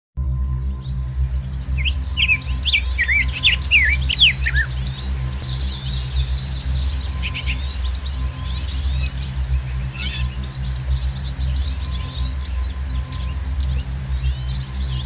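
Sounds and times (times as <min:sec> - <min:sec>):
ambient music drone: 0:00.2 - 0:15.0
songbirds chirping: 0:00.3 - 0:15.0.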